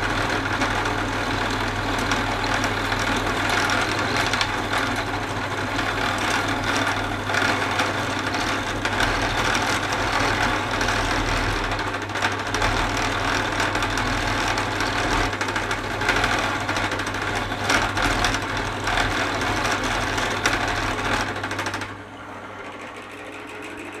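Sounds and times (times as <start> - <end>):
drill press motor hum: 19.4 - 24.0.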